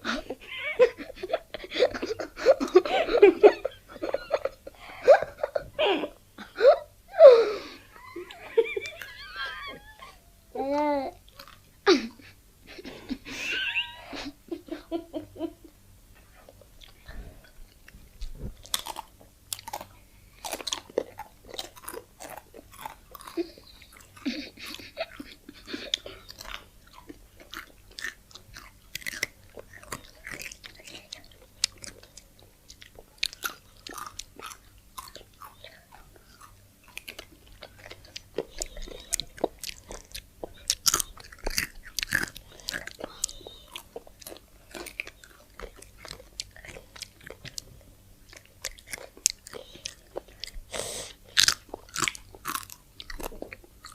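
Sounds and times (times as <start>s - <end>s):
chewing crunchy food: 11.2s - 11.7s, 16.2s - 53.9s.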